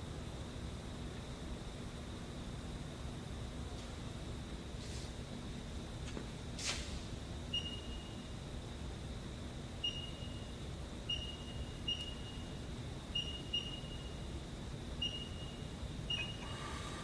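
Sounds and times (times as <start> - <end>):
steady low hum: 0.0 - 4.6, 16.2 - 17.0.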